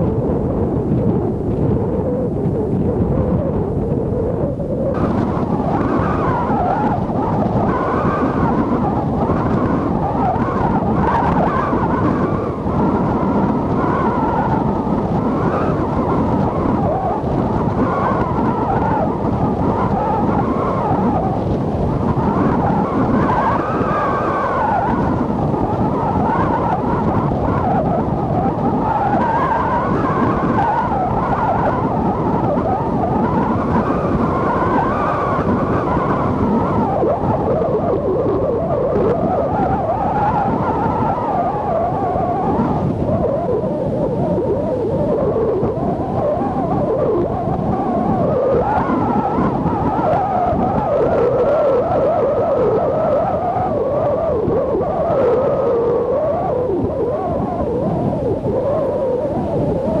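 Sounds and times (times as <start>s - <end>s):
strong gale wind: 0.0s - 60.0s
surf breaking on beach: 4.9s - 37.5s.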